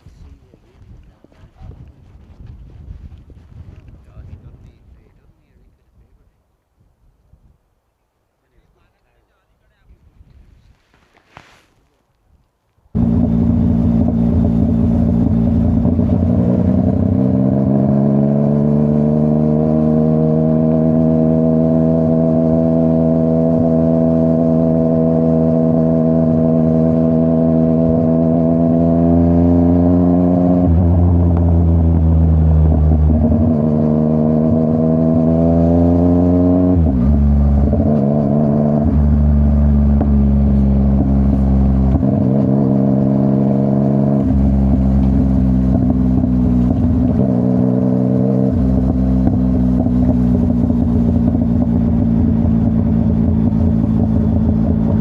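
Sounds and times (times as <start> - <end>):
motorcycle engine revving: 13.0 - 55.0.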